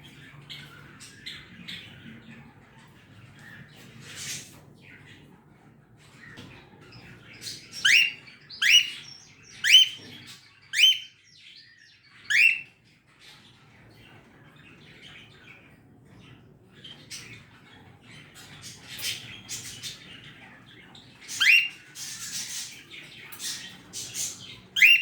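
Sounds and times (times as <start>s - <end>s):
cockatiel chirps: 7.7s - 10.0s, 10.7s - 11.2s, 12.3s - 12.7s, 21.3s - 22.7s, 24.8s - 25.0s
cockatiel screeching: 7.9s - 9.0s, 12.3s - 12.6s, 24.8s - 25.0s.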